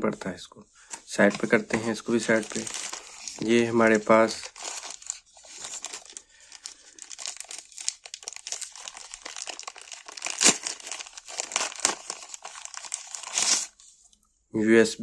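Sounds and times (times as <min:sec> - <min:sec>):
packaging crinkling and rustling: 0:00.9 - 0:14.0.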